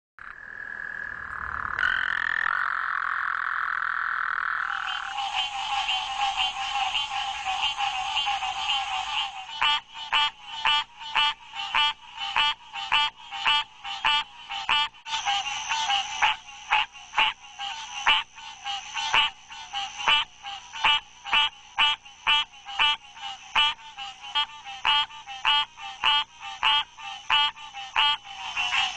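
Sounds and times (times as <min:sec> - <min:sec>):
frogs calling: 0:00.2 - 0:28.9.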